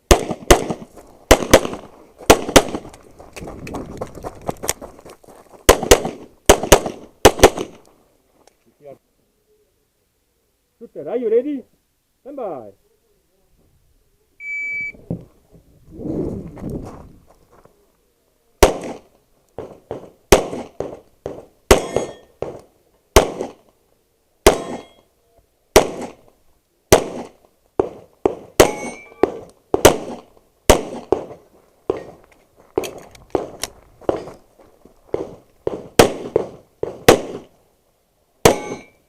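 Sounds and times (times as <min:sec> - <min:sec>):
shot timer beep: 0:14.4 - 0:15.0
handgun shots with echo: 0:24.5 - 0:24.9, 0:27.0 - 0:32.1, 0:38.5 - 0:38.9.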